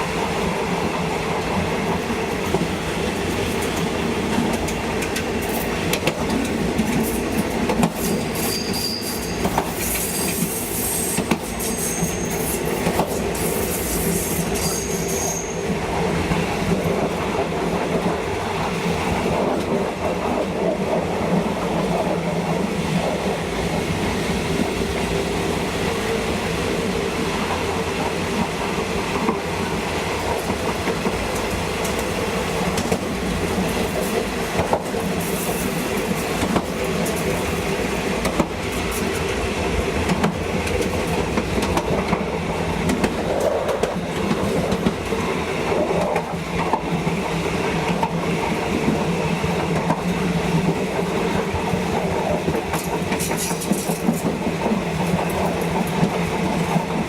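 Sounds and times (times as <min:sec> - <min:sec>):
train rumbling on rails: 0:00.0 - 0:57.0
wheel squeals: 0:08.0 - 0:12.8, 0:13.4 - 0:15.6.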